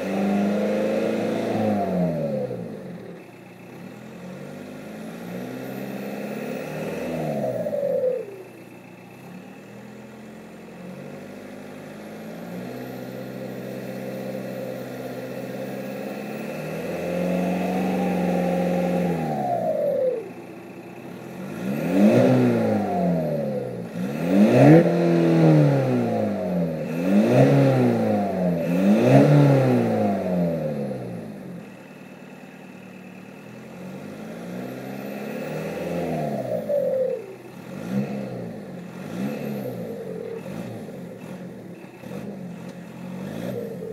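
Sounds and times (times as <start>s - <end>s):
diesel engine revving: 0.0s - 43.9s
turbo whistle: 17.4s - 20.5s.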